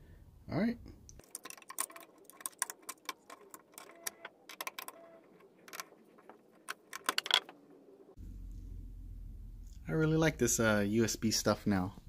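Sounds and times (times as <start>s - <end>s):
hard objects clicking and rattling: 1.2s - 7.8s.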